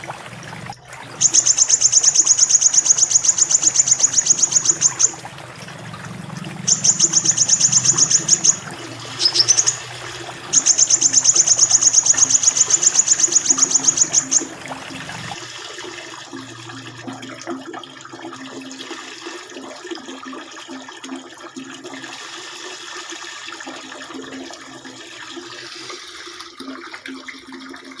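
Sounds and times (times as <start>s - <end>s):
running water: 0.0s - 28.0s
songbird trilling: 1.2s - 5.2s, 6.6s - 9.9s, 10.5s - 14.5s
low hum: 5.0s - 10.4s.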